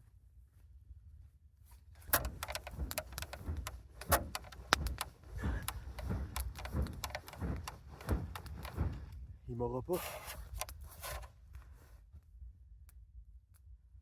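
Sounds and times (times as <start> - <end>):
crackles and snaps: 1.9 - 9.2.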